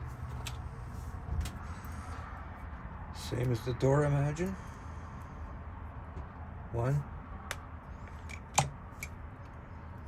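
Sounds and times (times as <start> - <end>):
small metal lock parts clicking: 8.0 - 9.2.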